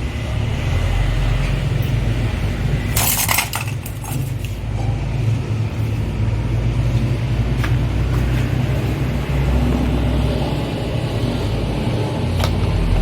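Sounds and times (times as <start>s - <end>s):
metal parts clinking and rattling: 2.9s - 4.6s.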